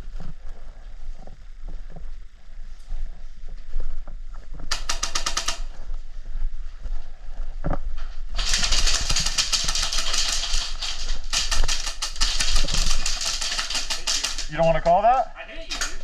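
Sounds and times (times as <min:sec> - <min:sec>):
airsoft gun firing bursts: 0:04.7 - 0:05.8, 0:08.4 - 0:14.8.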